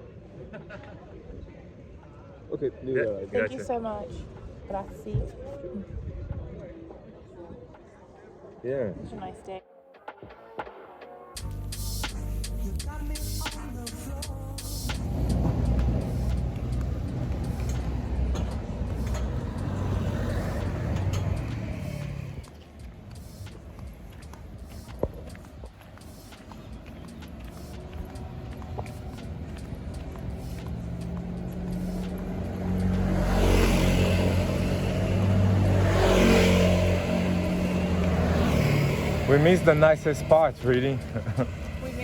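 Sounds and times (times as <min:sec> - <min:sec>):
low engine rumble: 0:11.4 - 0:42.0
motor engine running: 0:24.8 - 0:35.8.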